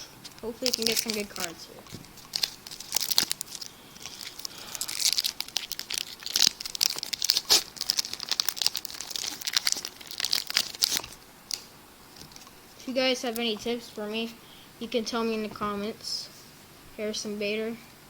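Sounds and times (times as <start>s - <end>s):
wrapper crinkling and tearing: 0.3s - 12.6s.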